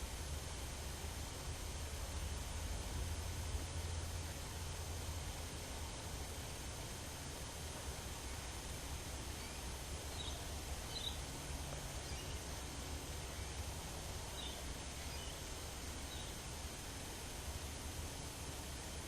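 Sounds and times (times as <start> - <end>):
low background rumble: 0.0 - 19.0
faint bird chirps: 9.3 - 11.3, 12.0 - 12.5, 14.3 - 15.4, 16.0 - 16.4.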